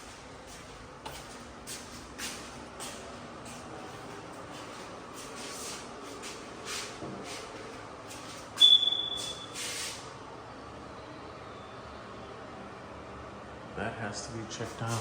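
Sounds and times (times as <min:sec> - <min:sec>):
smoke detector beep: 0:08.6 - 0:09.7.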